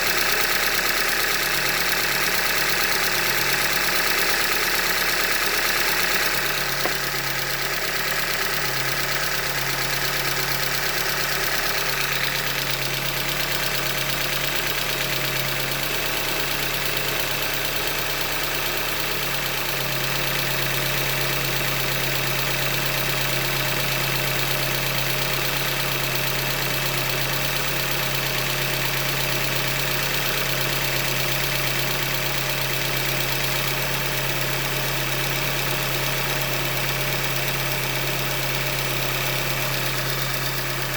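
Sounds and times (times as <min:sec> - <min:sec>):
car engine idling with knock: 0:00.0 - 0:25.1, 0:25.9 - 0:40.9.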